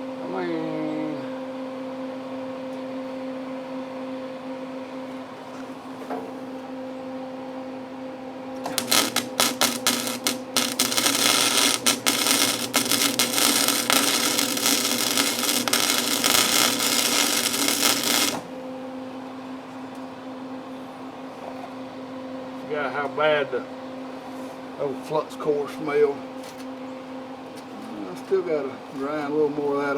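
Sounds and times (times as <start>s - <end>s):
welder arc crackling and sizzling: 8.7s - 18.6s
steady hum: 8.7s - 18.8s.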